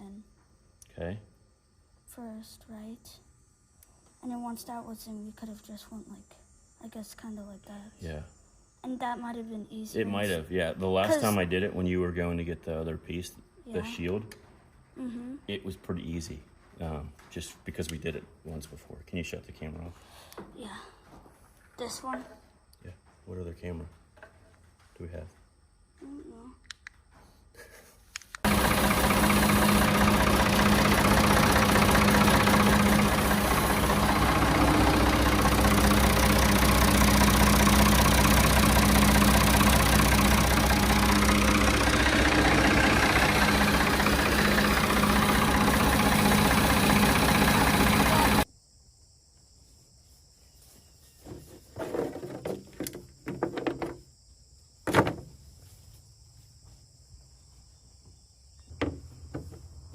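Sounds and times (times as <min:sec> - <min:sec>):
sharp click: 0:26.6 - 0:27.0
backhoe engine running: 0:28.4 - 0:48.5.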